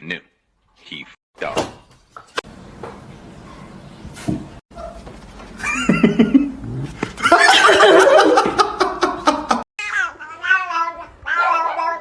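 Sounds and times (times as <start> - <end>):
animal crying: 9.8 - 12.0.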